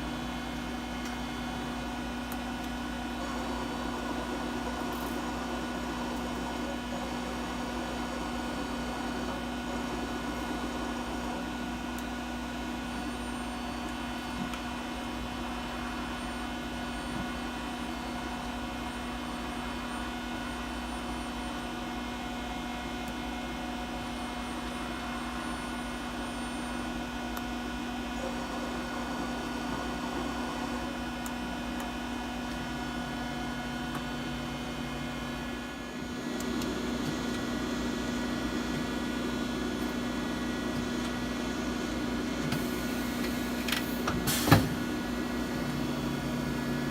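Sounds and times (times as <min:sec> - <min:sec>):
faint machine whine: 0:00.0 - 0:46.9
machining center humming: 0:00.0 - 0:46.9.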